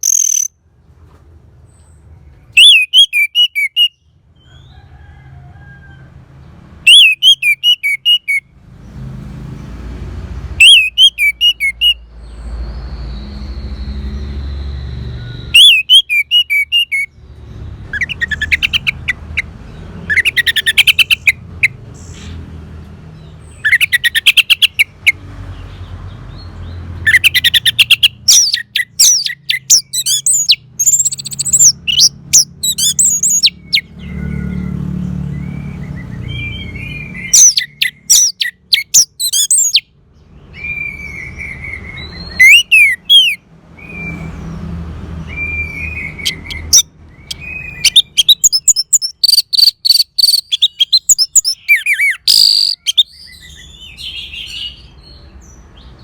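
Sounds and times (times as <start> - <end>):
thrush singing whistled phrases: 0.0 - 0.5, 2.5 - 4.1, 6.8 - 8.5, 10.6 - 12.1, 12.8 - 17.2, 17.9 - 19.5, 20.1 - 22.3, 23.6 - 25.2, 27.0 - 34.6, 35.3 - 39.9, 40.5 - 44.4, 45.3 - 54.9.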